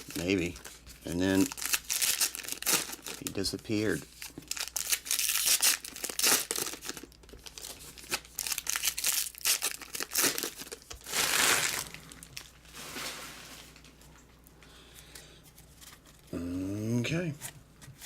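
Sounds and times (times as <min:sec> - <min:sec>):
plastic wrapping tearing: 0:00.0 - 0:14.0
plastic wrapping crackling: 0:00.0 - 0:14.3.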